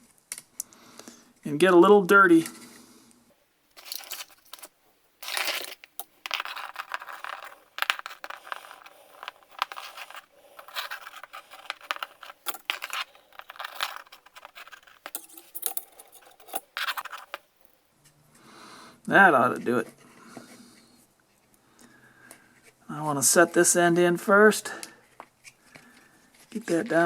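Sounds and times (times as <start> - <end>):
metal spring clicking and scraping: 3.8 - 17.8.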